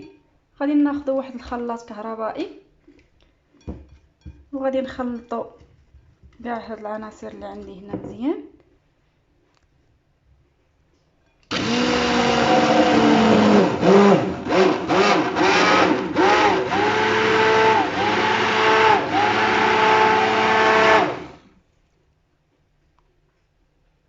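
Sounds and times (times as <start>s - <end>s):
electric blender running: 11.5s - 21.4s.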